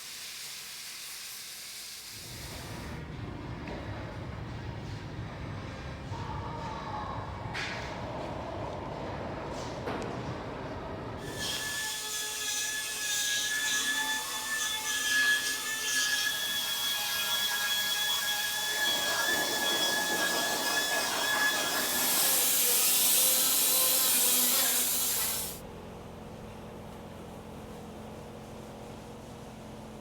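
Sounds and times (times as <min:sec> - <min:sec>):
loud hiss: 0:00.0 - 0:03.0, 0:21.9 - 0:25.6
grinding on sheet metal: 0:11.3 - 0:25.6
power tool whining: 0:17.6 - 0:25.6.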